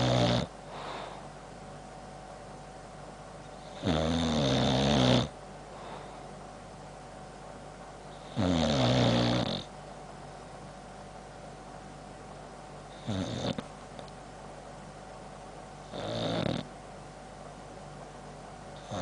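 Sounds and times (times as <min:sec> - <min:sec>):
dog snoring: 0:00.0 - 0:01.2, 0:03.5 - 0:05.4, 0:08.1 - 0:09.7, 0:12.9 - 0:13.7, 0:15.8 - 0:16.7, 0:18.8 - 0:19.0.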